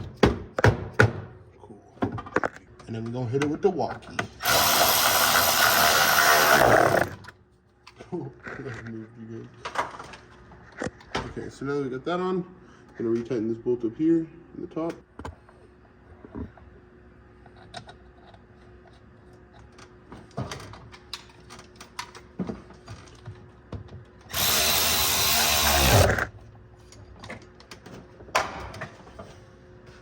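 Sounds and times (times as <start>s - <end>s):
cordless impact wrench: 4.4s - 7.2s, 24.3s - 26.3s.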